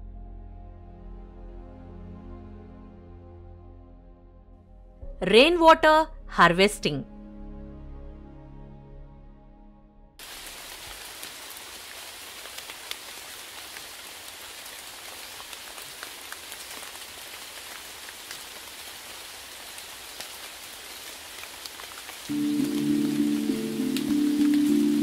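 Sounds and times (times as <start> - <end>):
steady rain hiss: 10.2 - 25.0
raindrop ticks: 12.4 - 19.0, 21.0 - 25.0.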